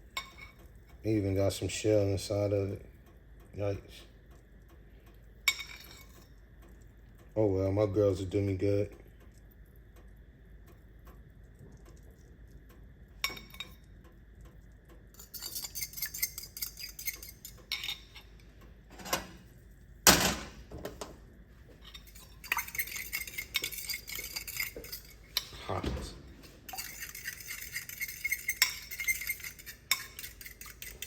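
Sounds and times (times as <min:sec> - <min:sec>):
fork beating eggs in a bowl: 0:05.5 - 0:06.9, 0:14.6 - 0:18.5, 0:21.8 - 0:25.6, 0:26.4 - 0:31.0.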